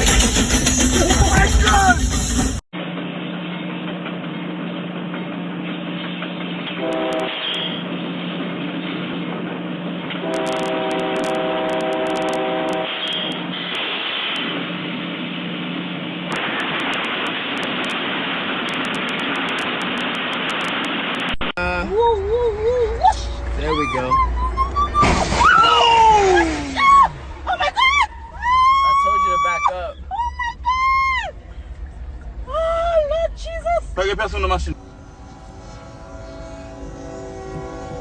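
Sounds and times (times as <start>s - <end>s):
train rumbling past: 0.0s - 16.6s, 21.6s - 28.9s, 29.9s - 38.0s
locomotive horn blasts: 6.8s - 7.8s, 10.2s - 13.4s, 34.8s - 38.0s.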